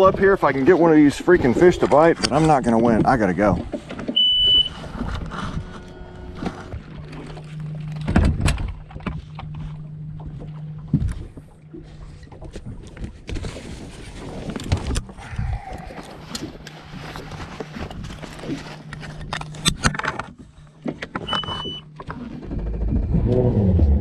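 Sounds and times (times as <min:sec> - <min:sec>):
knocks and thuds on boat: 0:00.0 - 0:15.0
steady low hum: 0:00.0 - 0:24.0.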